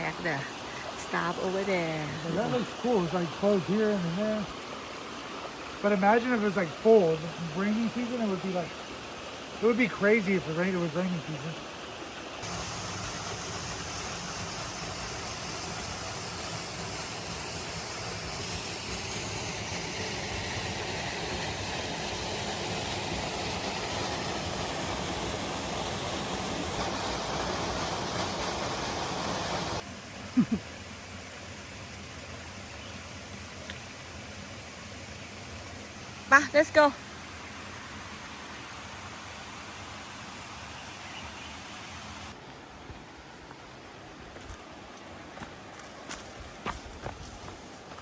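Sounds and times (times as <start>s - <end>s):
waterfall rushing: 0.0s - 31.5s.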